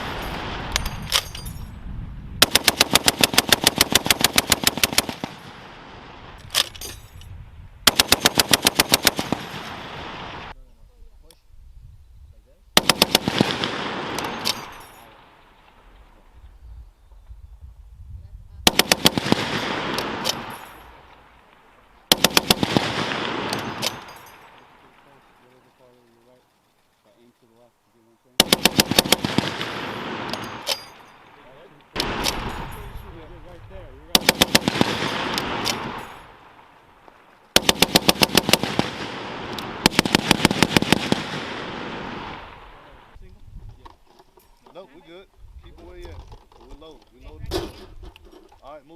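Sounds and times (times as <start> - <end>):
machine gun bursts: 2.4 - 5.4, 7.9 - 9.7, 12.8 - 14.8, 18.7 - 20.6, 22.1 - 24.2, 28.4 - 31.0, 34.1 - 36.0, 37.5 - 39.0, 39.8 - 41.6
echoing rumble: 18.6 - 25.7, 28.4 - 43.2.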